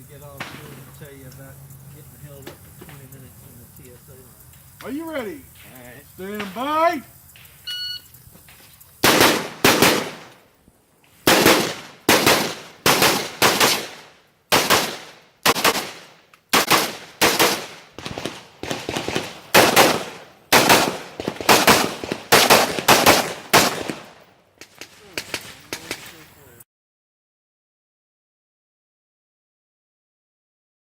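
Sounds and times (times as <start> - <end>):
rifle shots: 0.4 - 0.9, 9.0 - 10.4, 11.2 - 26.4
shot timer beep: 7.6 - 8.1.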